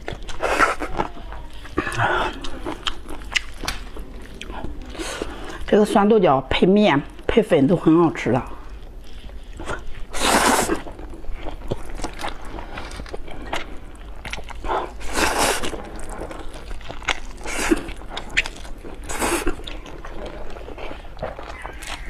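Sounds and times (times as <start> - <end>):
chewing and crunching food: 0.0 - 22.0
slurping noodles: 9.6 - 11.0, 14.6 - 19.7.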